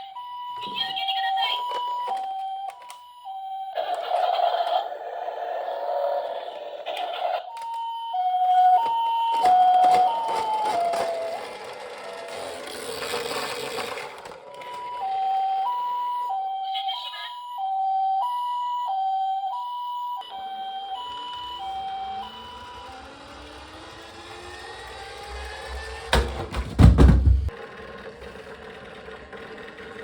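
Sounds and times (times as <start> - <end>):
toy two-tone siren: 0.0 - 26.5.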